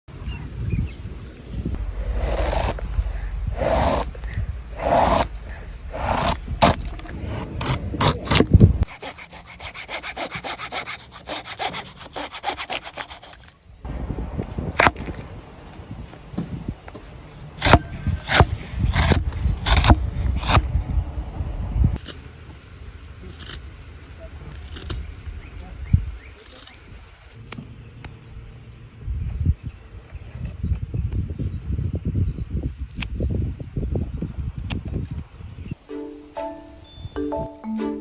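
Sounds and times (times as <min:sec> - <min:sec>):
hand saw sawing wood: 0:01.8 - 0:13.6, 0:17.6 - 0:20.7.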